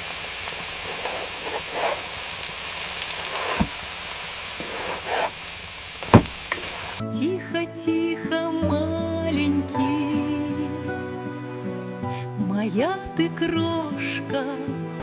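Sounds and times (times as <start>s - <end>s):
crackling: 0.0s - 7.0s
wind-driven snow hissing: 0.0s - 7.0s.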